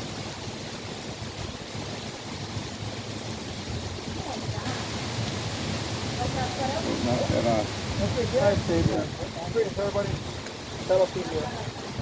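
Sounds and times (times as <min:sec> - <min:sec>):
heavy rain falling: 0:00.0 - 0:12.0.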